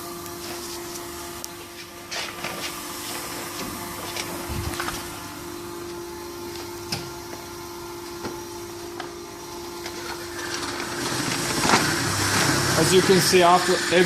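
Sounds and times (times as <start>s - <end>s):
machine line humming: 0.0s - 14.0s.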